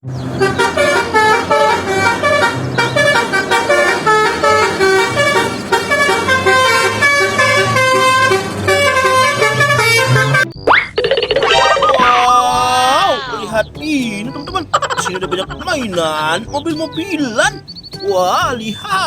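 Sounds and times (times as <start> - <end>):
musical bus horn tune: 0.0 - 10.6, 13.4 - 17.9.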